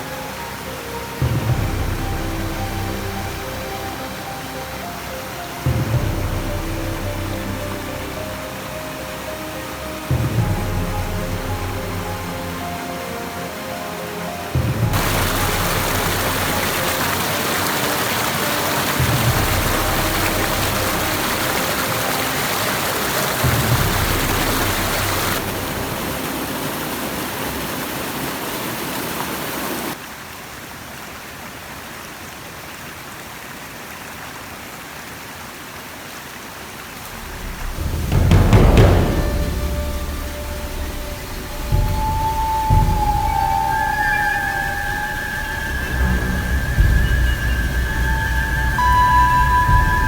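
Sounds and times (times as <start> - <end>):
water rushing: 0.0 - 50.0
low thuds: 19.0 - 21.9, 23.4 - 26.0, 37.1 - 50.0.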